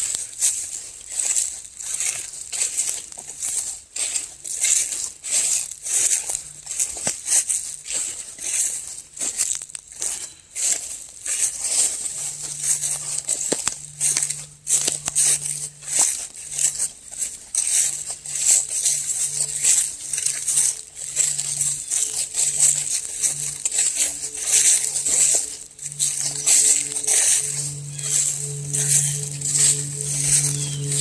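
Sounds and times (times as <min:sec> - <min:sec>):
footsteps crunching through leaves: 0:00.0 - 0:31.0
twigs rustling and snapping: 0:09.2 - 0:31.0.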